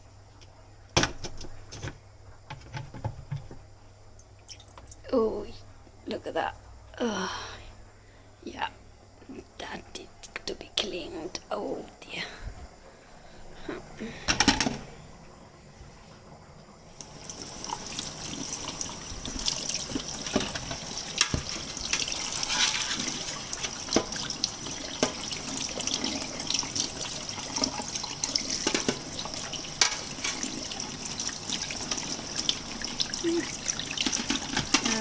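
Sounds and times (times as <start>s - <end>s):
tap water running: 14.0s - 35.0s.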